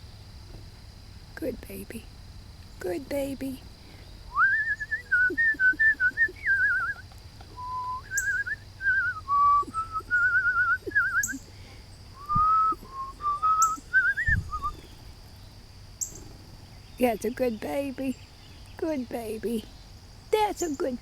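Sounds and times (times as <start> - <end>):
person whistling a warbling tune: 4.3 - 7.0, 7.6 - 11.4, 12.2 - 14.8.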